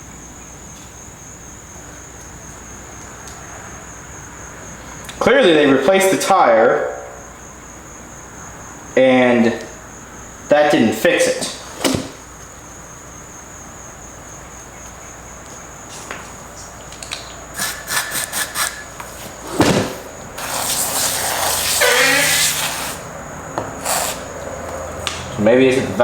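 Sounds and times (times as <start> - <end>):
air hissing: 17.5 - 24.8
squeaky rubber rubbing: 17.6 - 23.1, 23.8 - 24.4.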